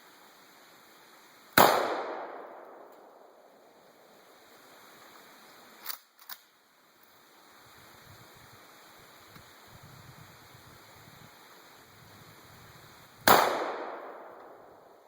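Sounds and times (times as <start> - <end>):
shotgun firing: 1.6 - 2.9, 13.2 - 14.6.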